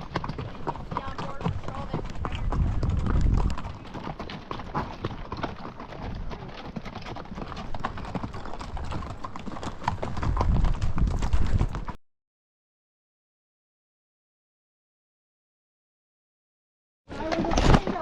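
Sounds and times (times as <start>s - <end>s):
horse hooves clip-clopping: 0.0s - 12.0s, 17.1s - 18.0s.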